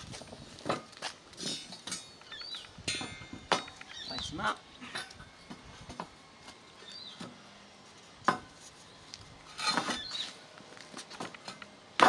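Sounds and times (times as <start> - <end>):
metal and wood clinking and knocking: 0.6 - 4.0
metal clanks: 0.7 - 4.0.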